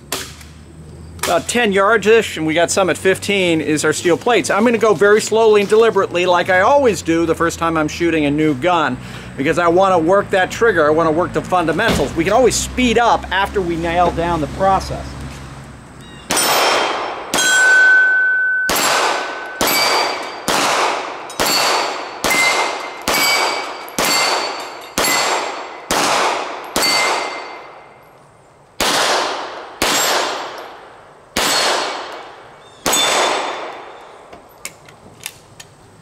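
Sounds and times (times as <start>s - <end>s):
steel plate ringing clang: 16.3s - 20.5s, 21.2s - 25.9s, 26.6s - 28.1s
pistol shots: 16.3s - 27.9s, 28.8s - 34.1s.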